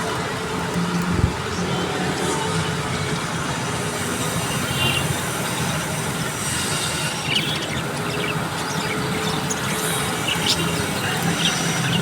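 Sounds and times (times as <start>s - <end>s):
budgies chirping: 4.4s - 12.0s.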